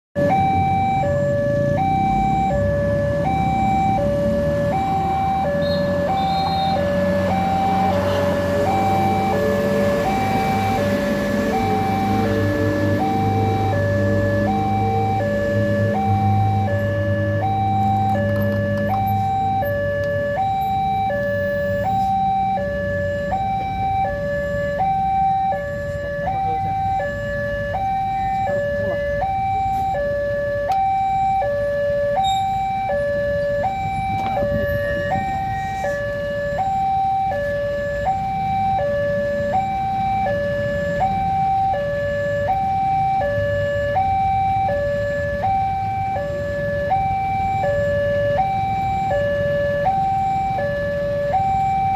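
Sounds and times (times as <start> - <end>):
level crossing two-tone alarm: 0.2 - 51.9
road vehicles running: 0.2 - 51.9.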